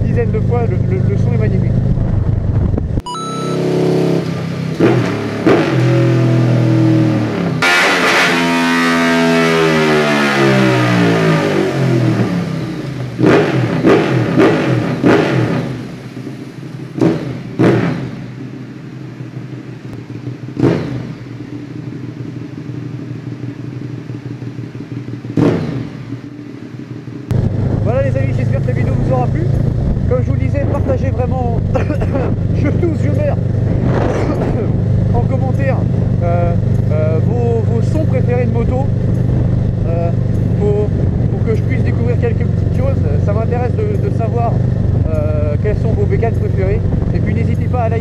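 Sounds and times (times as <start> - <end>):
motorcycle engine revving: 0.0 - 48.0
throttle blips: 3.0 - 3.9.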